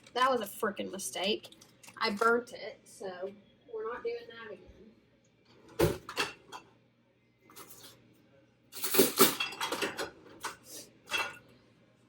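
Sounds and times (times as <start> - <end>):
pans and utensils clattering: 5.6 - 6.7, 8.8 - 11.4.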